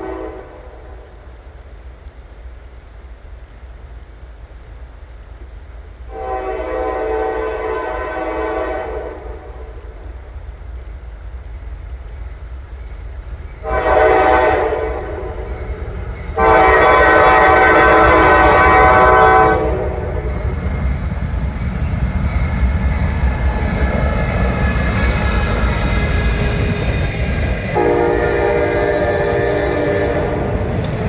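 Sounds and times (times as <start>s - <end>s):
train horn blasts: 0.0s - 1.0s, 6.1s - 9.8s, 13.6s - 20.6s, 23.4s - 31.0s
diesel locomotive rumble: 0.0s - 31.0s.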